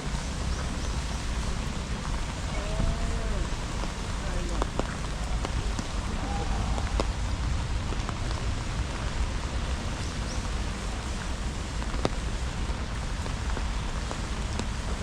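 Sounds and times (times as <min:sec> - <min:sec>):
low rumble: 0:00.0 - 0:10.7
steady rain falling: 0:00.0 - 0:15.0
ticks of single raindrops: 0:00.0 - 0:15.0.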